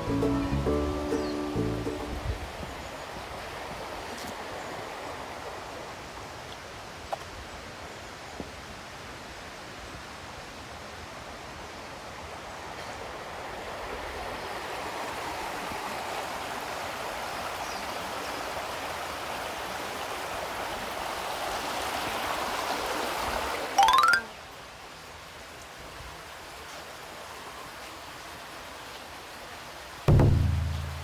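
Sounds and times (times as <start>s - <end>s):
stream water rushing: 0.0s - 6.6s.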